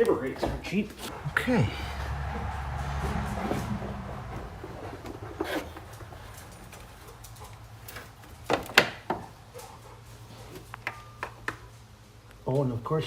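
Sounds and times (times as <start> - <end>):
steady low hum: 1.1 - 7.9.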